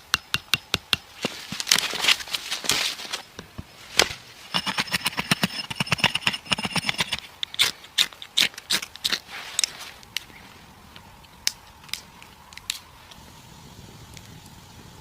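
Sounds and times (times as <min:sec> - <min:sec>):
rapid metallic tool strokes: 0:04.5 - 0:07.3.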